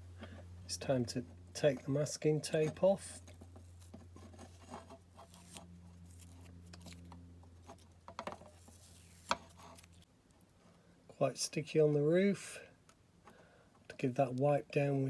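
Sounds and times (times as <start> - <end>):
steady low hum: 0.0 - 10.1
tape peeling with crackling: 3.2 - 10.1.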